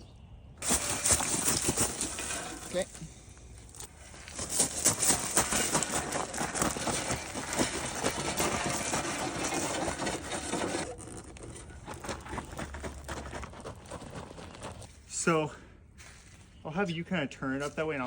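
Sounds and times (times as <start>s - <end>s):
metal lathe scraping over ground: 0.6s - 14.8s.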